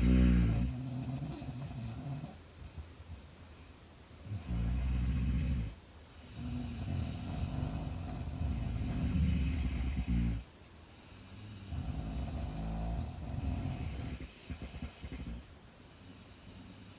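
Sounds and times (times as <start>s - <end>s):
woman snoring: 0.0s - 2.4s, 6.4s - 10.4s, 11.6s - 14.3s.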